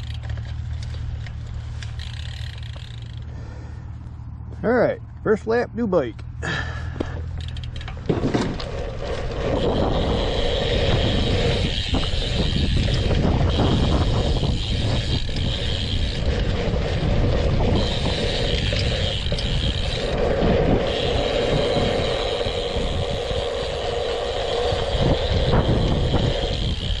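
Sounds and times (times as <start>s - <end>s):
bike tyres on dirt: 0.0s - 27.0s
steady high whir: 7.2s - 27.0s
wind buffeting microphone: 8.0s - 27.0s.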